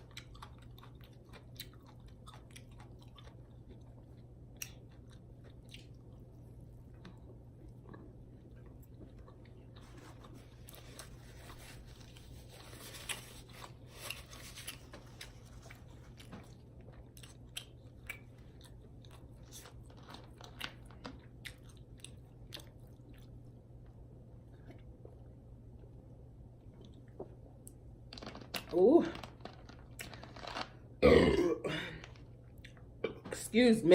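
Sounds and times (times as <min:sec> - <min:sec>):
person chewing food: 0:00.0 - 0:26.0, 0:26.6 - 0:33.2.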